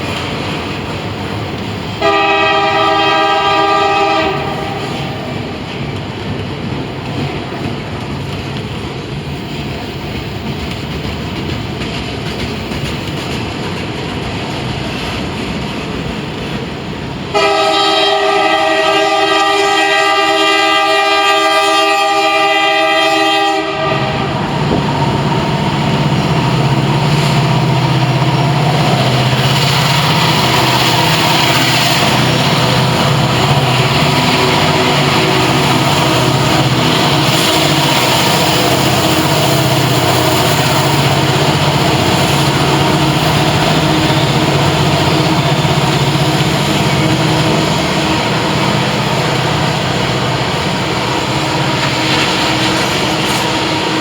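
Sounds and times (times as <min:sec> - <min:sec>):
train wheels rumbling: 0:00.0 - 0:54.0
locomotive air horn blast: 0:02.0 - 0:05.4, 0:17.3 - 0:24.8, 0:29.5 - 0:54.0.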